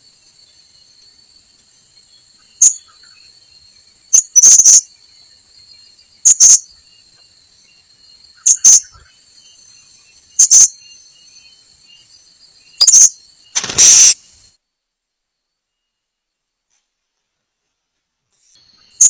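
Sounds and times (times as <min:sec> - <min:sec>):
insects droning: 0:00.0 - 0:16.6, 0:18.3 - 0:19.0
parrot shrill calls: 0:12.8 - 0:14.2.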